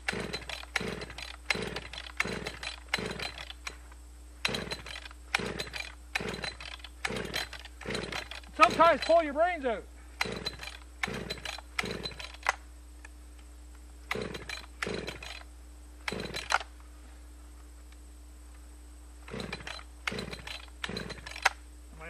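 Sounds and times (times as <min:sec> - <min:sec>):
engine turning over: 0:00.0 - 0:03.8, 0:04.4 - 0:09.2, 0:10.2 - 0:12.6, 0:14.1 - 0:16.7, 0:19.2 - 0:21.6
chainsaw recoil starter pulls: 0:00.0 - 0:09.4, 0:10.2 - 0:12.6, 0:14.1 - 0:16.7, 0:19.2 - 0:21.6.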